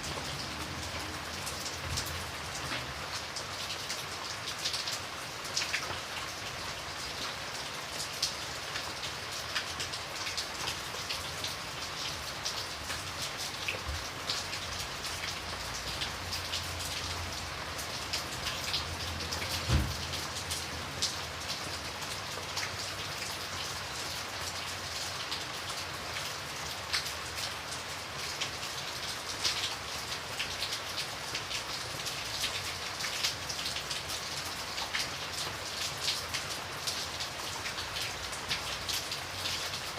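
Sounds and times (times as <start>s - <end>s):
steady rain pattering: 0.0s - 39.9s
dull thump: 19.7s - 20.0s.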